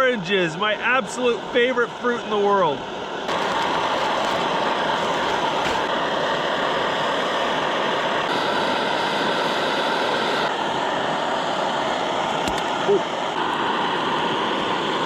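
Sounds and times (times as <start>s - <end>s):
camp stove burner hissing: 2.4s - 15.0s.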